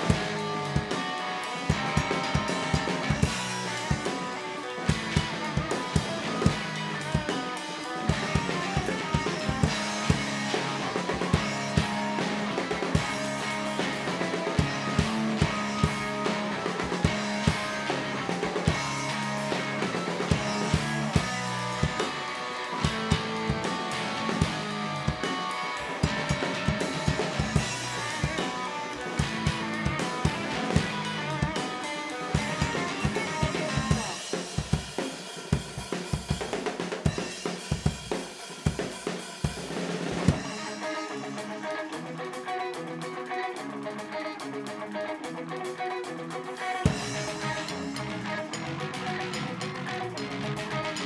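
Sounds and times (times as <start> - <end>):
guitars and bass: 0.0 - 51.0
live rock band playing: 0.0 - 51.0
drum hits: 8.1 - 40.6.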